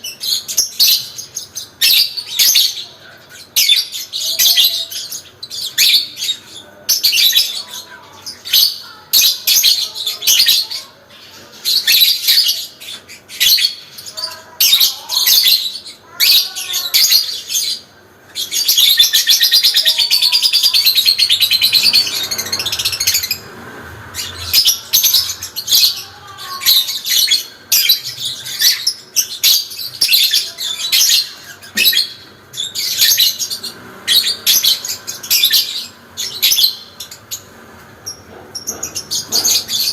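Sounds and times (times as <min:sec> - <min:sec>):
lovebird chattering: 0:00.0 - 0:23.5.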